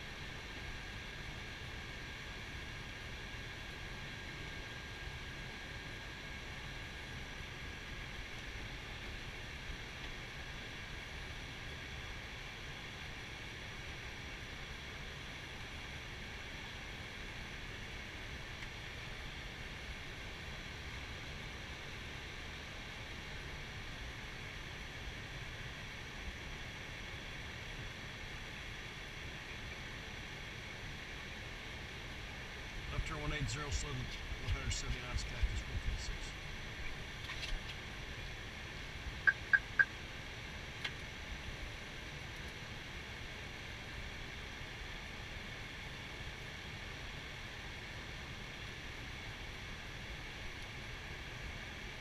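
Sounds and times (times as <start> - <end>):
air and ventilation rush: 31.5 - 52.0
cockpit airflow and equipment noise: 32.0 - 52.0
high-pitched beeps: 39.3 - 39.9.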